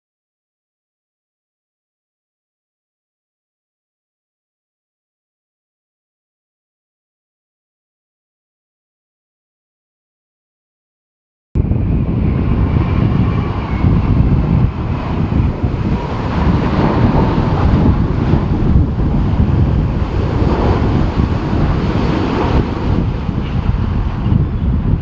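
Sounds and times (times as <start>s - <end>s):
wind buffeting microphone: 11.6s - 25.0s.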